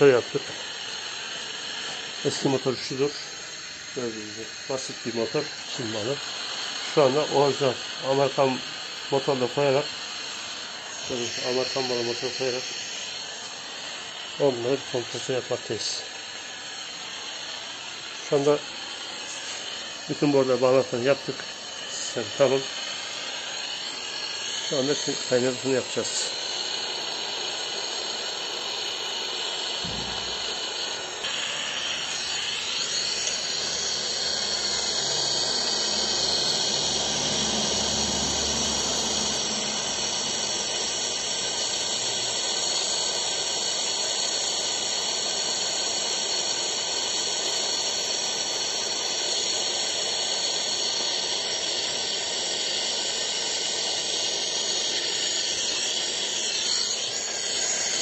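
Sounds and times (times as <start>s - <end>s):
welding torch flame hissing: 0.0s - 58.0s.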